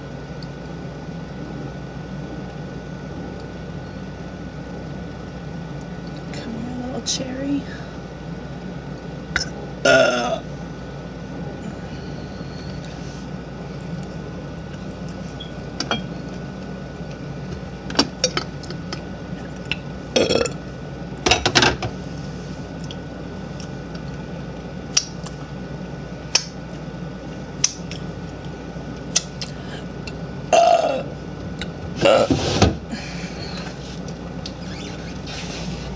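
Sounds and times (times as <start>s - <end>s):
steady low hum: 0.0s - 35.9s
woman burping: 9.4s - 10.4s, 20.2s - 20.6s, 30.5s - 31.1s, 32.0s - 32.3s.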